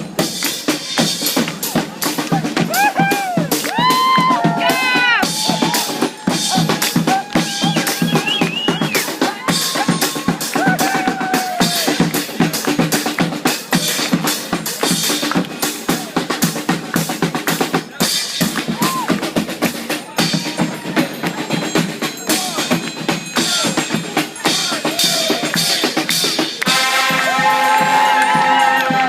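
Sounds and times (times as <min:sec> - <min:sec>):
drum beat: 0:00.0 - 0:29.0
trombones playing held chords: 0:26.6 - 0:29.0.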